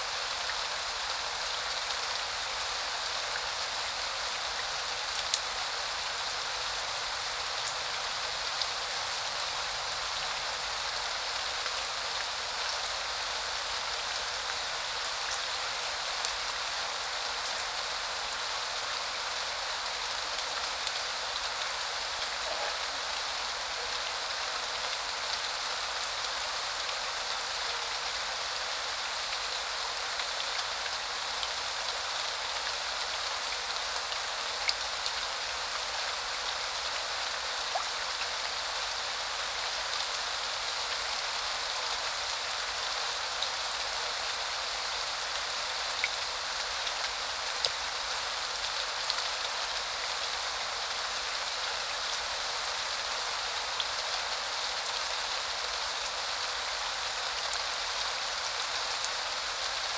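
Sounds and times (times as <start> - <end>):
rain falling: 0.0 - 59.9
raindrops ticking on a surface: 1.7 - 5.8, 37.7 - 38.4.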